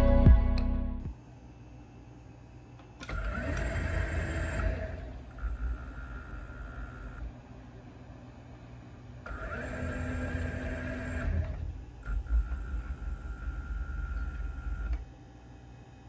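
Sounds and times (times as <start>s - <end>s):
sliding door motor whine: 3.0s - 15.1s.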